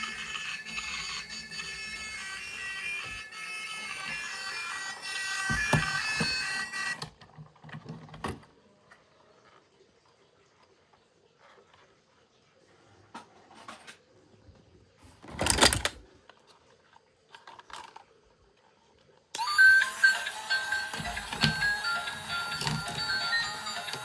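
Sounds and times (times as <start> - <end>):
plastic toy vehicles clicking and rattling: 15.2 - 18.7, 19.4 - 24.0.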